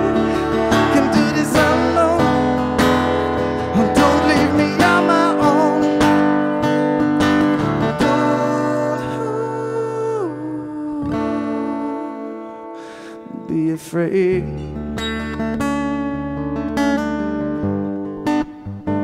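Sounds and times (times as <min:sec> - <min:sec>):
acoustic guitar strumming: 0:00.0 - 0:19.0.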